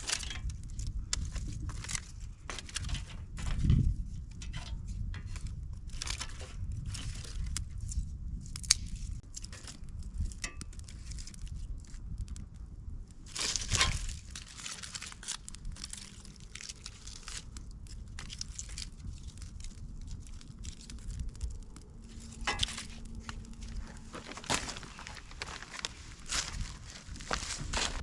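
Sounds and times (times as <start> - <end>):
dry material crunching: 13.1 - 28.0.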